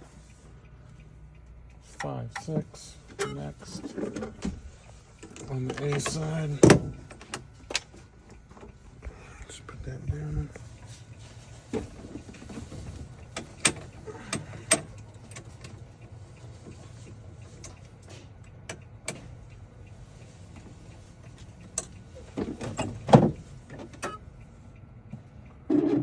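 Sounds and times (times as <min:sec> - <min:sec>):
low steady hum: 0:00.0 - 0:25.6.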